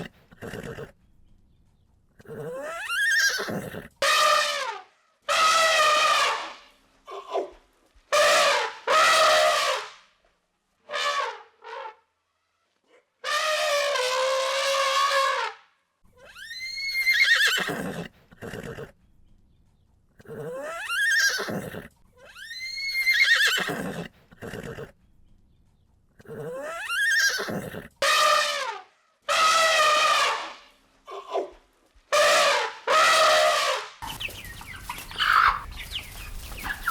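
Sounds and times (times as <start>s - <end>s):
horse whinnying: 0.0s - 0.9s, 2.2s - 4.5s, 16.2s - 18.9s, 20.2s - 24.9s, 26.2s - 28.6s.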